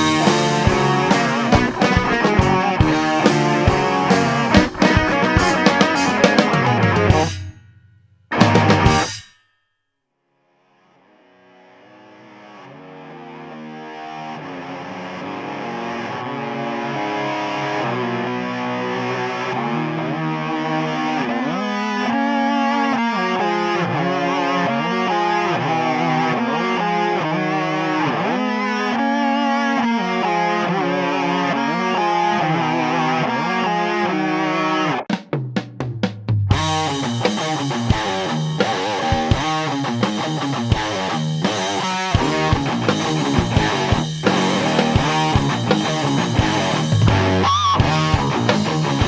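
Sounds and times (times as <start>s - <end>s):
distorted electric guitar: 0.0s - 7.6s, 8.3s - 9.2s, 11.5s - 35.0s, 36.5s - 49.0s
rock drums: 0.0s - 9.4s, 33.4s - 49.0s.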